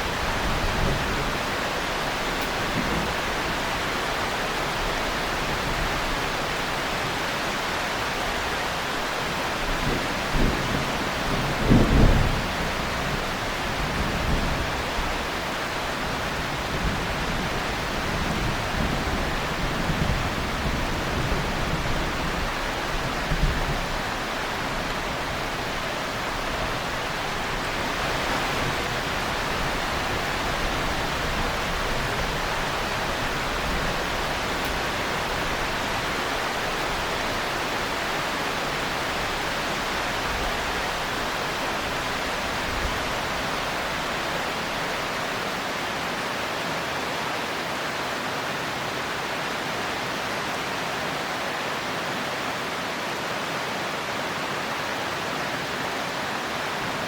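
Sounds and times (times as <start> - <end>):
thunder rumbling: 0.0 - 4.3, 9.6 - 45.2
heavy rain hissing: 0.0 - 57.0.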